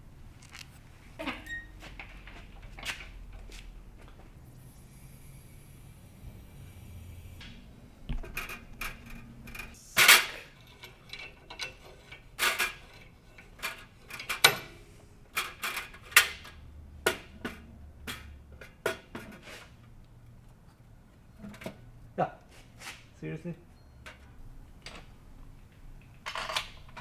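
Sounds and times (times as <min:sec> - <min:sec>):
metal tools clinking and knocking: 0:08.2 - 0:14.4.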